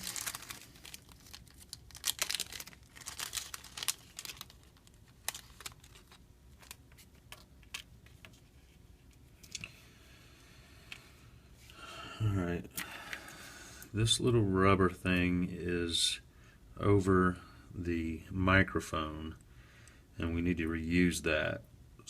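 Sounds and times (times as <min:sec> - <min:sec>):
plastic packaging crinkling: 0:00.0 - 0:08.4.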